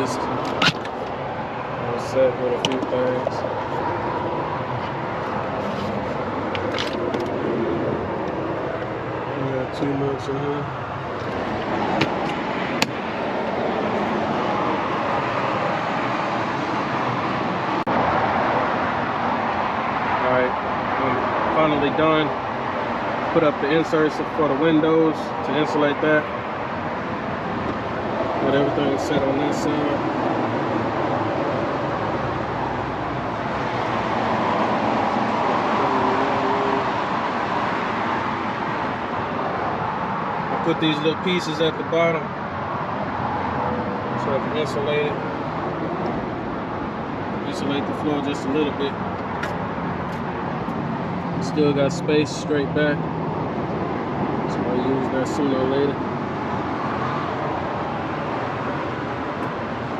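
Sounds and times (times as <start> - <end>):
road traffic: 0.0 - 59.9.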